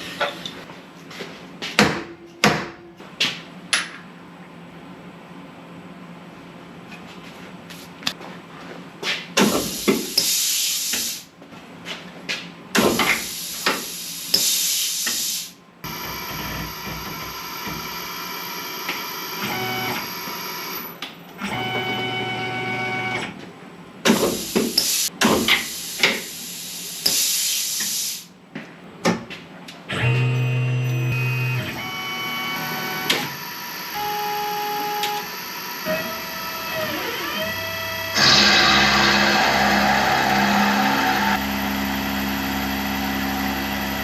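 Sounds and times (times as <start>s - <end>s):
motor whine: 15.9s - 20.9s, 30.0s - 44.0s
hissing cutting noise: 38.1s - 41.4s.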